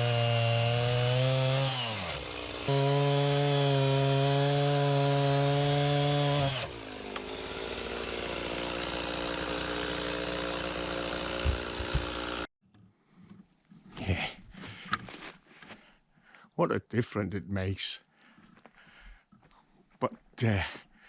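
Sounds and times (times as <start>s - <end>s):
chainsaw cutting log: 0.0s - 12.5s.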